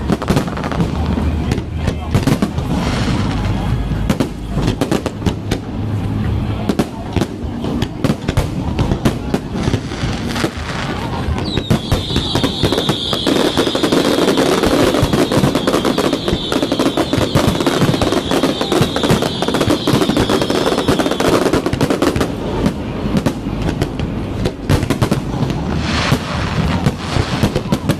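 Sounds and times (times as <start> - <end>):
fireworks bangs and crackles: 0.0 - 27.9
high firework whistle: 9.6 - 22.4.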